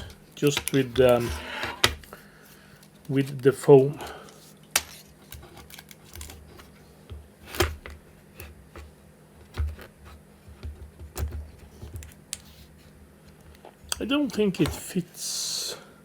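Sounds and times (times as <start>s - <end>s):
plastic parts clicking and knocking: 0.0s - 2.1s, 10.5s - 12.4s, 13.3s - 14.9s
faint steady hum: 0.0s - 16.0s.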